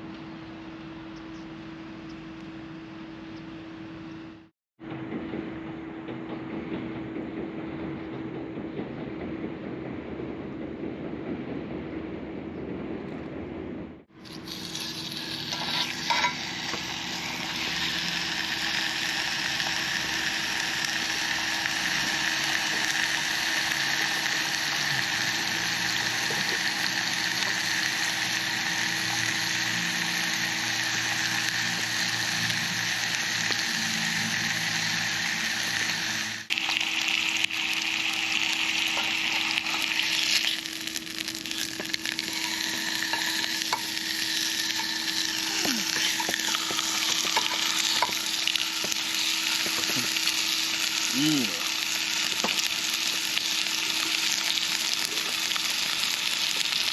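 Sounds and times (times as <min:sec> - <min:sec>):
meat sizzling on a grill: 0:14.2 - 0:56.9.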